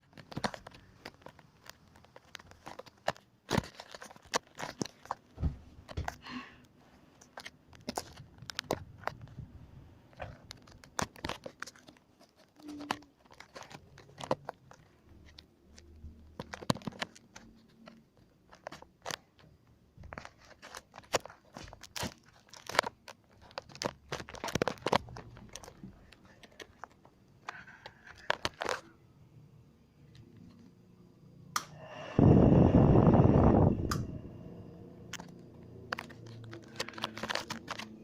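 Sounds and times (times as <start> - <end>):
sharp clicks and crackles: 10.1 - 28.9, 35.1 - 38.0.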